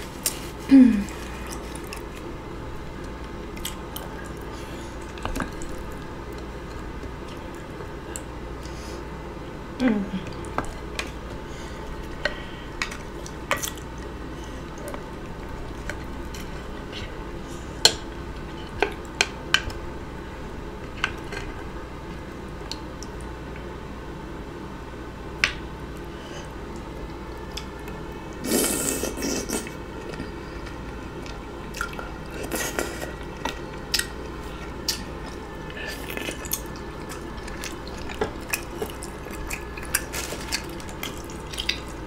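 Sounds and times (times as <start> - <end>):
wet chewing and smacking: 1.1 - 2.3, 2.9 - 8.7, 11.9 - 17.2, 29.5 - 42.0.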